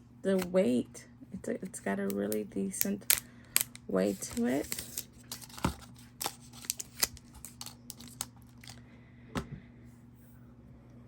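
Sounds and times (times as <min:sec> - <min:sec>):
packaging rustling: 0:03.1 - 0:08.8.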